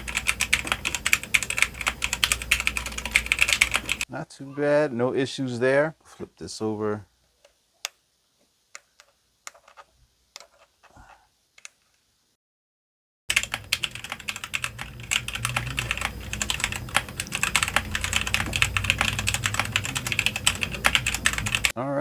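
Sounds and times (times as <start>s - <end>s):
fast typing on mechanical keyboard: 0.0s - 4.1s, 13.3s - 21.7s.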